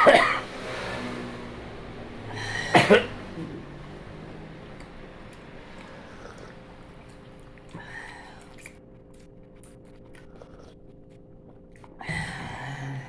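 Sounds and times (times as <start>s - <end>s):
faint steady hum: 0.0s - 13.0s
chewing soft bun: 0.5s - 13.0s
wet mouth clicks: 4.6s - 12.6s.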